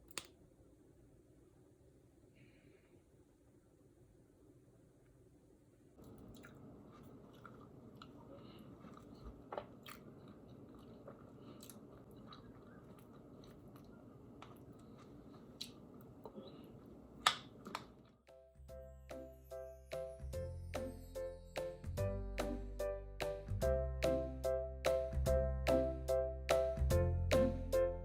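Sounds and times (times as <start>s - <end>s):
low room noise: 0.0s - 18.3s.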